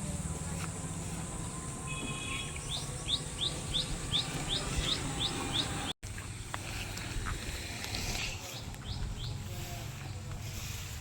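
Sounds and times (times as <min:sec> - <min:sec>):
diesel engine running: 0:00.0 - 0:06.0
bird chirping: 0:00.6 - 0:05.9, 0:08.1 - 0:10.2.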